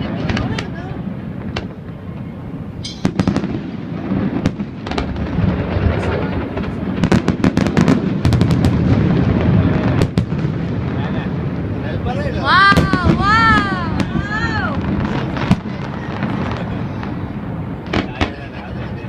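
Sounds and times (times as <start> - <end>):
fireworks cracking and popping: 0.0 - 2.2, 2.8 - 19.0
booming firework shells: 2.8 - 11.7, 17.9 - 18.6.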